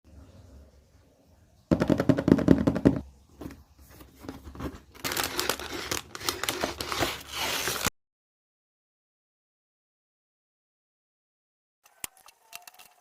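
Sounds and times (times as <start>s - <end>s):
packaging tearing and crinkling: 4.8s - 7.9s.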